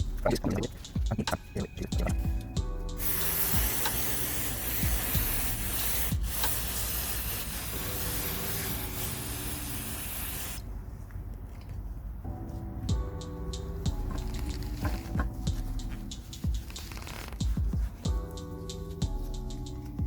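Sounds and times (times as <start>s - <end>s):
aerosol can spraying hiss: 3.0s - 10.6s.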